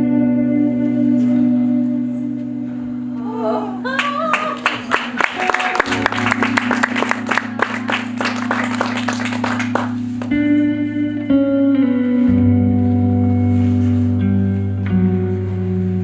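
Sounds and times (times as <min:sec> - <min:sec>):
sustained chords: 0:04.8 - 0:16.0.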